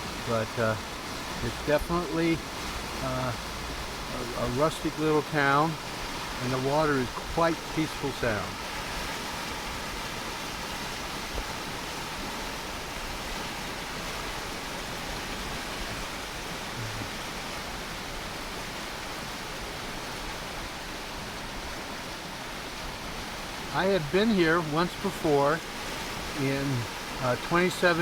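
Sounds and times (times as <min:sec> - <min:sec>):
stream rushing over rocks: 0:00.0 - 0:28.0.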